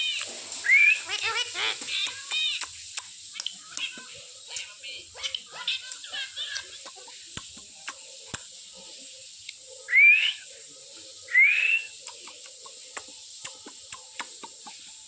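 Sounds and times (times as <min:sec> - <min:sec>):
faint clicks: 0:01.2 - 0:08.5, 0:12.0 - 0:14.8.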